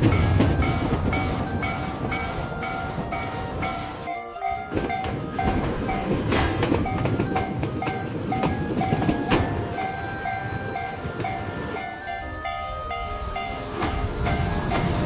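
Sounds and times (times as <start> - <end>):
train wheels clattering: 0.0 - 12.4
level crossing alarm ringing: 0.1 - 6.2.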